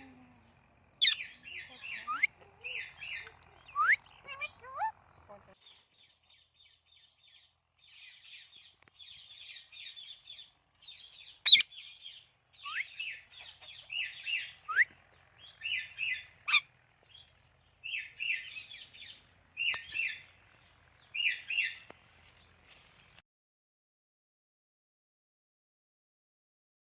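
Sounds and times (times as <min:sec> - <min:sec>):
parrot chirping: 0:01.0 - 0:20.3, 0:21.1 - 0:21.9.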